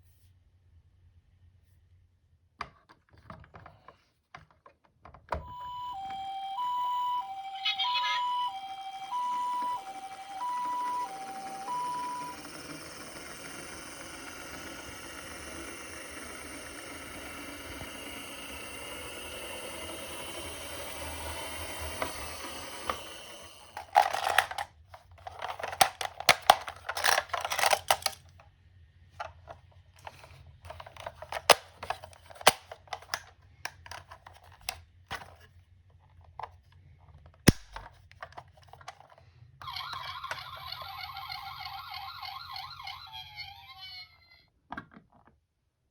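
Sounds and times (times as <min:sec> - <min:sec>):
faint ambulance siren: 0:05.4 - 0:24.6, 0:39.6 - 0:44.4
toy cars clicking and clattering: 0:07.4 - 0:28.3, 0:29.3 - 0:35.4.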